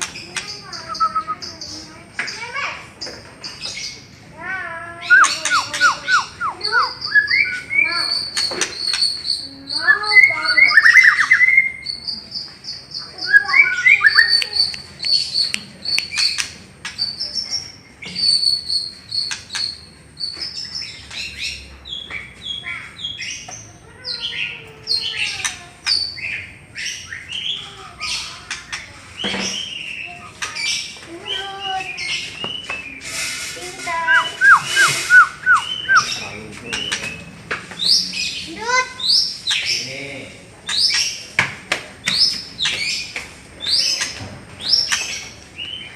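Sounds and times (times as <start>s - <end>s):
songbird singing whistled trills: 0.6s - 1.7s, 5.0s - 23.5s, 33.9s - 38.1s.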